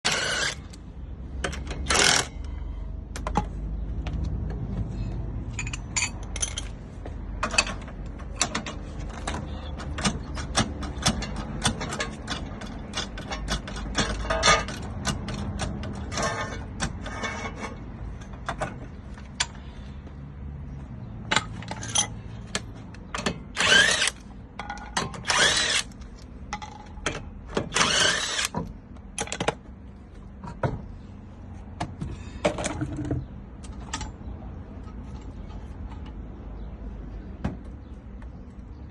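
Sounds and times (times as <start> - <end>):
hand tools clicking and clattering: 7.4 - 19.6.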